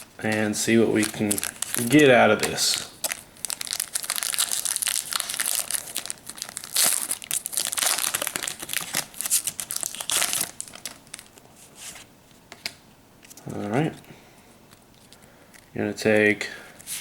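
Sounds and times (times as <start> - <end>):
foil wrapper crinkling: 0.0 - 11.5.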